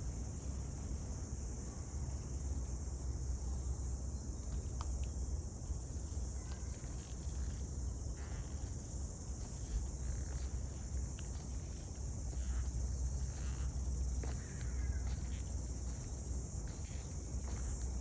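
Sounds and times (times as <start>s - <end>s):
constant low rumble: 0.0s - 18.0s
high-pitched insect chorus: 0.2s - 18.0s.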